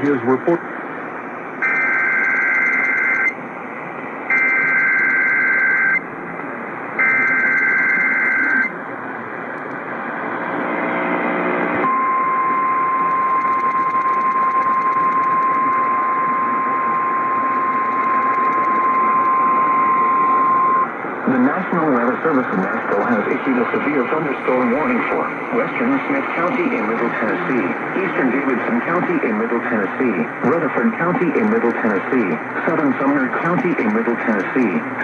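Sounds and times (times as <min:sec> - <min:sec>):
radio hiss: 0:00.0 - 0:12.0, 0:13.6 - 0:35.0
steady single-pitch alert tone: 0:11.8 - 0:21.0.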